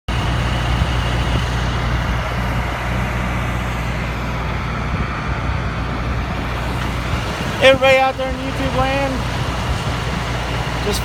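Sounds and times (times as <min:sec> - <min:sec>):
heavy engine droning: 0:00.0 - 0:11.0.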